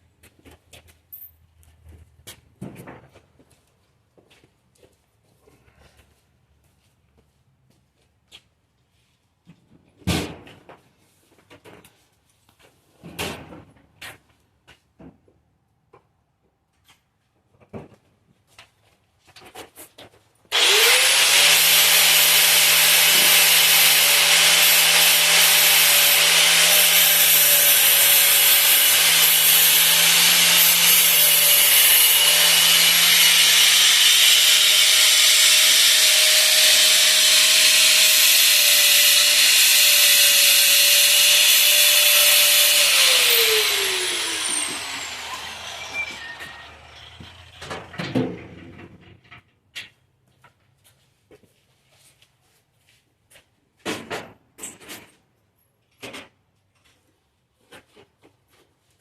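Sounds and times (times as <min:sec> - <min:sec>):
grinder grinding metal: 0:20.5 - 0:47.9.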